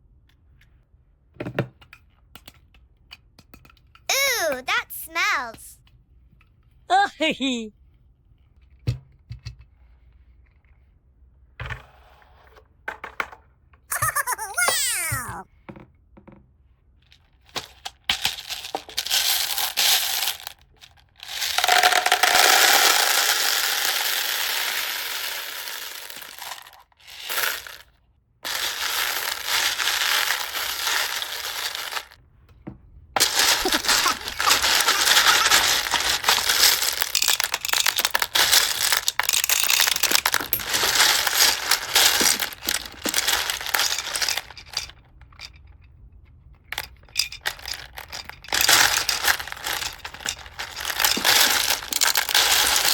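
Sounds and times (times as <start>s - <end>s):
plastic packaging crinkling: 33.2s - 44.5s, 48.6s - 52.9s.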